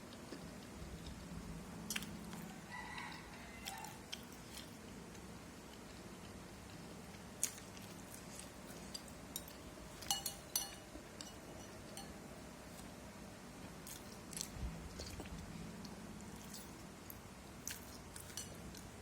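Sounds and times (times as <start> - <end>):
spoon clinking against bowl: 9.4 - 12.2.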